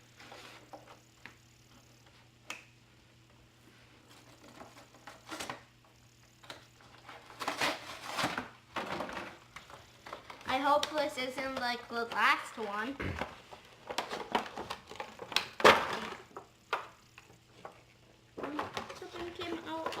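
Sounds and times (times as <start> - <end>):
plastic and cardboard crinkling: 4.0 - 5.7, 6.5 - 16.5, 17.1 - 20.0.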